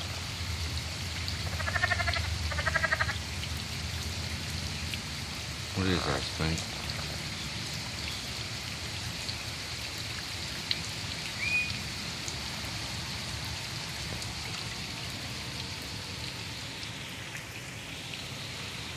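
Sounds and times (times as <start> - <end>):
steady hiss: 4.4 - 18.9
animal whistled call: 11.4 - 11.8.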